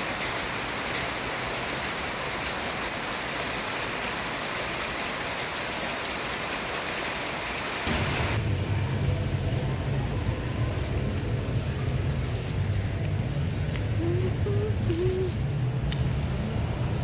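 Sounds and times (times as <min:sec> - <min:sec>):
rain falling: 0:00.0 - 0:17.0
low steady rumble: 0:07.9 - 0:17.0.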